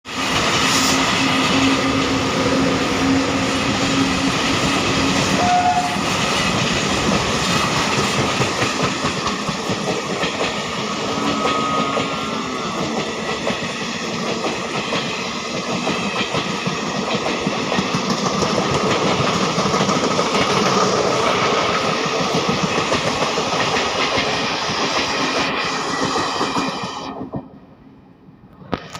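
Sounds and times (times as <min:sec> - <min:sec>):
train rumbling past: 0:00.1 - 0:28.9
train horn: 0:05.2 - 0:06.2, 0:11.0 - 0:12.7
wheels clacking on rail joints: 0:06.1 - 0:27.6.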